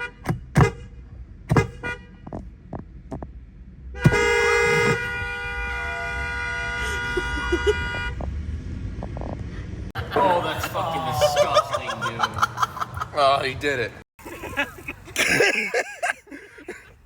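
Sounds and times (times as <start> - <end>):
short knocks: 1.5 - 3.3
air horn chord: 4.0 - 8.1.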